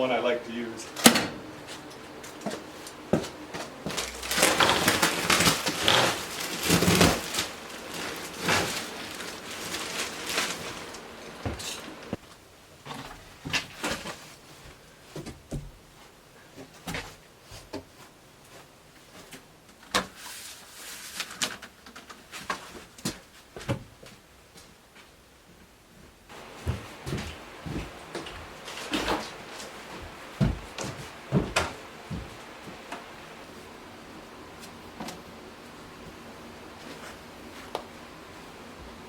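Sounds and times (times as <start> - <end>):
rustling and knocking handling noise: 1.0 - 20.1, 25.6 - 33.6.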